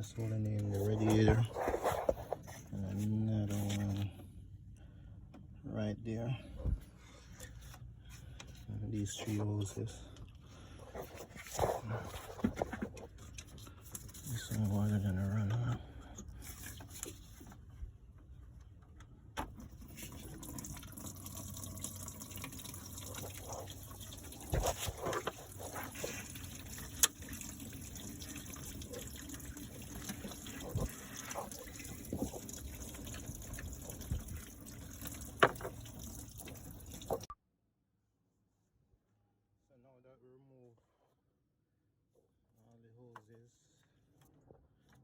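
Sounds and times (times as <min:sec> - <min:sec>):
water splashing from hose: 0:19.7 - 0:37.3.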